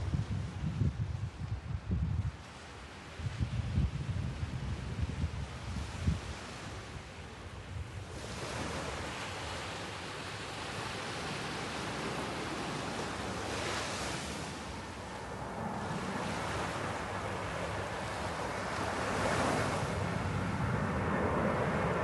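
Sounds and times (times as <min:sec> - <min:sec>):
sea waves washing onto shore: 0:05.5 - 0:22.0.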